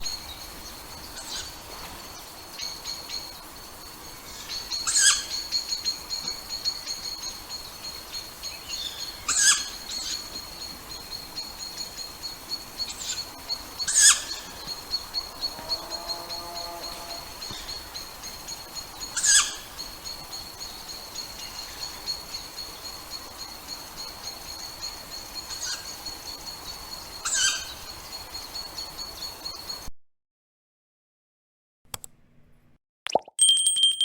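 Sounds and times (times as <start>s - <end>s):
owl calling harshly: 19.2s - 19.6s.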